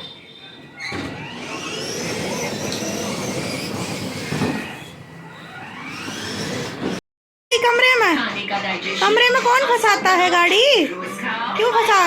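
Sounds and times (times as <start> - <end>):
wheels rolling on floor: 0.8 - 7.0
toy car motor whine: 0.9 - 7.0.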